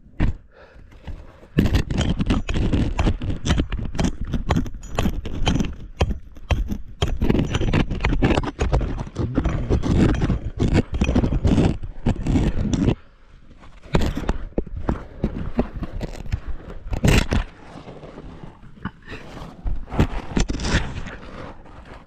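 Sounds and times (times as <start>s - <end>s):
power hammer chiselling rock: 1.0s - 13.0s.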